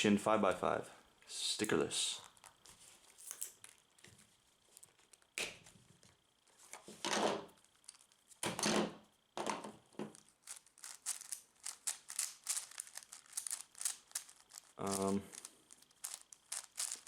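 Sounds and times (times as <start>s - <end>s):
plastic cube rustling and scraping: 2.2s - 8.4s, 9.9s - 17.0s
plastic cube clicking: 10.4s - 17.0s.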